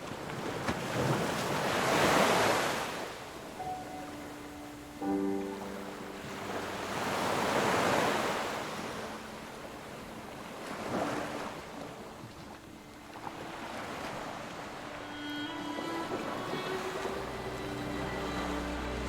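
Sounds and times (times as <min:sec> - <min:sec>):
ocean waves breaking on shore: 0:00.0 - 0:19.0.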